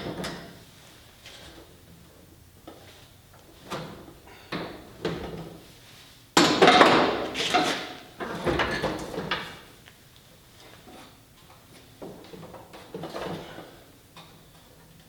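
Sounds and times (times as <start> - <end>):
clattering and scraping: 6.5 - 9.6.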